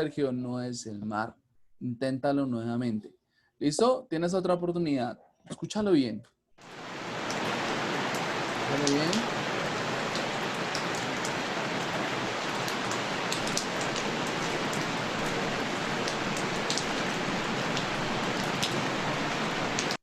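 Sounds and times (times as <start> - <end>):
raindrop ticks: 6.6 - 9.4, 10.1 - 18.9, 19.6 - 20.0
steady rain hiss: 6.6 - 20.0.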